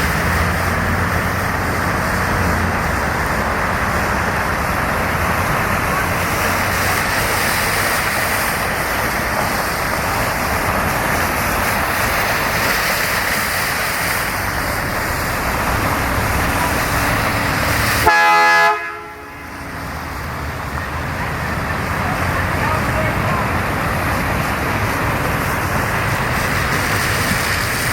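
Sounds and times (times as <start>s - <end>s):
steady rushing noise: 0.0s - 27.9s
vehicle horn honk: 18.0s - 19.5s.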